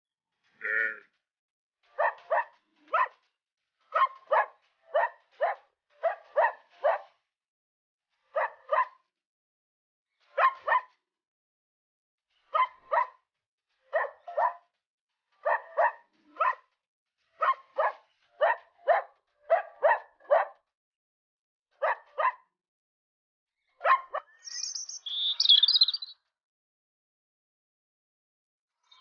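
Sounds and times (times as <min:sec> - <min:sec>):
dog barking: 0:01.9 - 0:03.2, 0:03.9 - 0:07.2, 0:08.3 - 0:09.0, 0:10.3 - 0:11.0, 0:12.5 - 0:13.2, 0:13.9 - 0:14.7, 0:15.4 - 0:16.8, 0:17.4 - 0:20.6, 0:21.8 - 0:22.5, 0:23.8 - 0:24.3
bird chirping: 0:24.3 - 0:26.2.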